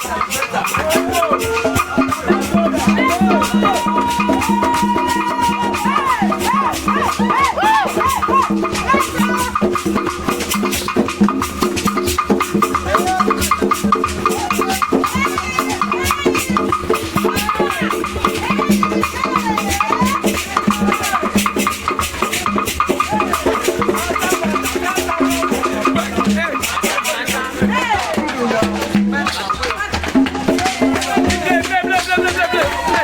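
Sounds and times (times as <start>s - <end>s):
choir singing: 0.0s - 9.7s
band with drums: 0.0s - 33.0s
shaken rattles: 0.0s - 33.0s.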